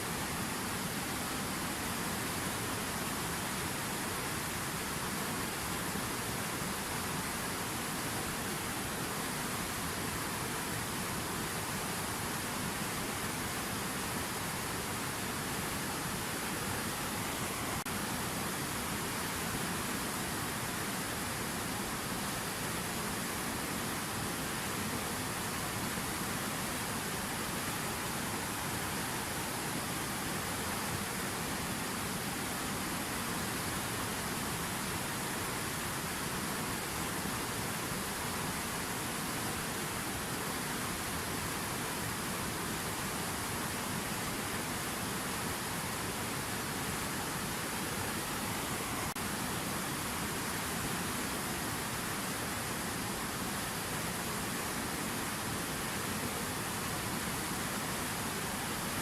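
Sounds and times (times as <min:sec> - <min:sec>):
fountain water rushing: 0:00.0 - 0:59.0.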